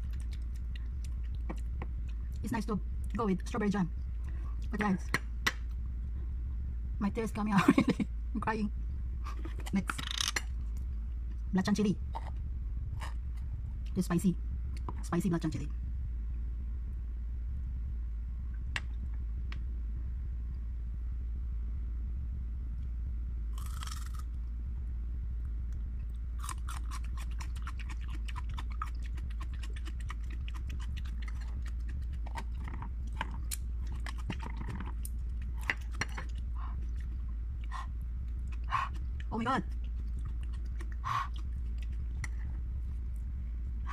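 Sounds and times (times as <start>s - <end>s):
low electrical hum: 0.0s - 43.9s
crunchy chewing of raw onion: 23.6s - 24.3s, 26.4s - 43.2s.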